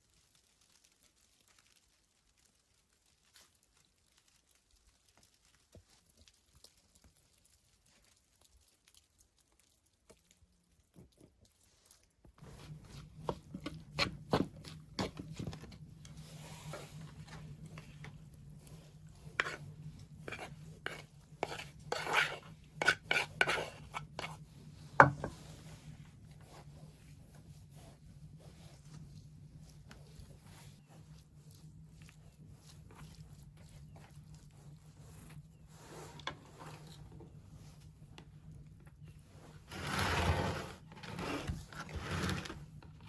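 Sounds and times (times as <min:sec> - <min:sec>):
low steady hum: 0:07.3 - 0:40.3.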